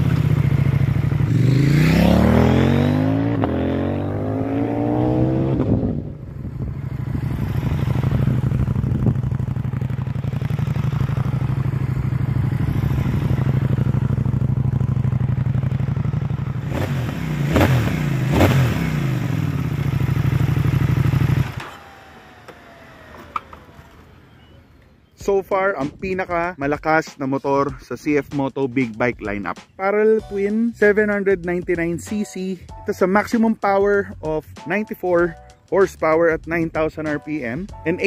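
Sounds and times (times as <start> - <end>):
motorcycle engine running: 0.0 - 25.4.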